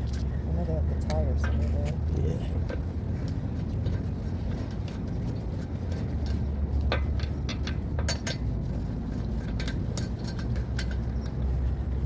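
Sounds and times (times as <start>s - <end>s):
metal tools clinking: 0.0s - 0.4s.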